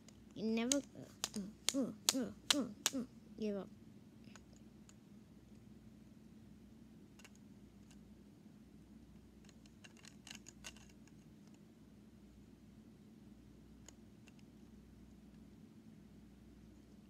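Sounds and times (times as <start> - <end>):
plastic lego pieces clicking: 0.6 - 3.0, 9.5 - 11.0.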